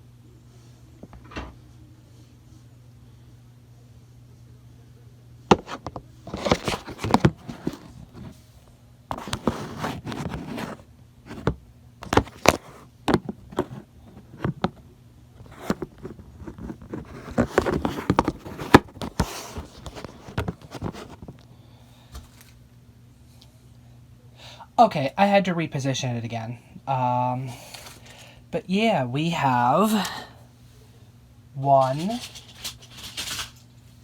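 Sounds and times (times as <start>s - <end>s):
rustling scrapes: 5.6s - 11.5s, 15.4s - 21.4s, 31.8s - 34.0s.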